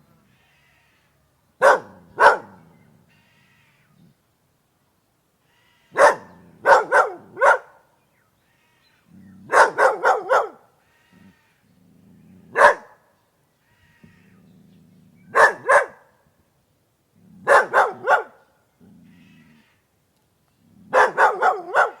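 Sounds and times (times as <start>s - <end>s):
dog barking: 1.6s - 2.6s, 6.0s - 7.8s, 9.5s - 10.7s, 12.5s - 13.0s, 15.3s - 16.1s, 17.4s - 18.4s, 20.9s - 22.0s.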